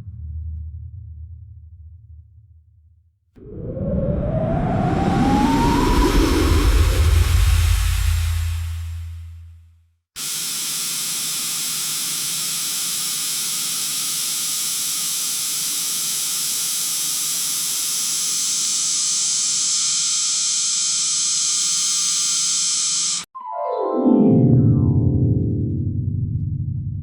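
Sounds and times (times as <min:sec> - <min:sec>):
bright high-pitched hiss: 0:10.2 - 0:23.3.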